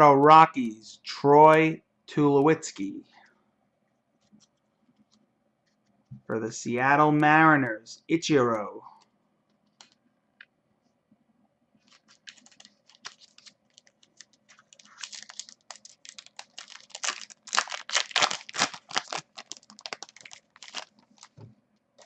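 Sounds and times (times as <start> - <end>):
card packaging crinkling and clicking: 9.7 - 10.0, 11.8 - 22.0.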